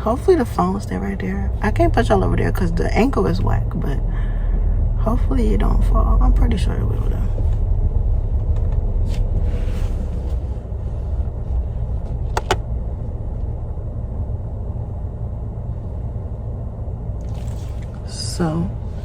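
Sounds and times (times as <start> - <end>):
car cabin engine and road rumble: 5.4 - 14.1
quick double click: 12.4 - 12.6.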